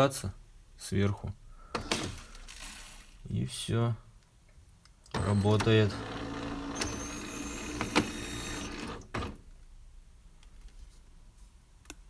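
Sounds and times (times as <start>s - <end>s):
coffee machine motor humming: 5.2s - 9.3s.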